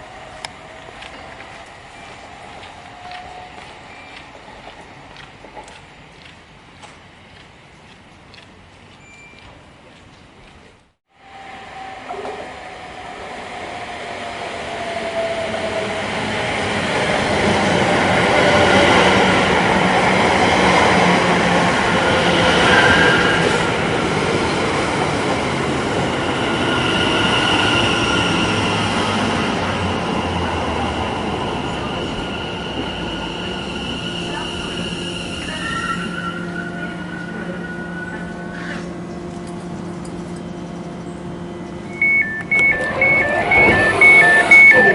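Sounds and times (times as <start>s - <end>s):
train wheels rumbling on rails: 0.0s - 44.9s
wheel and brake squeals: 31.6s - 38.9s
train motor whine: 31.7s - 44.9s.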